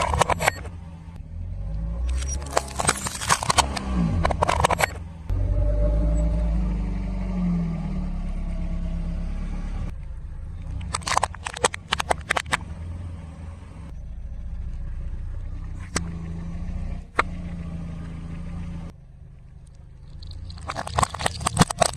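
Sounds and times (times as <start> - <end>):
car engine running low: 0.0 - 21.9
objects crunching under tyre: 2.0 - 5.0, 19.7 - 21.9.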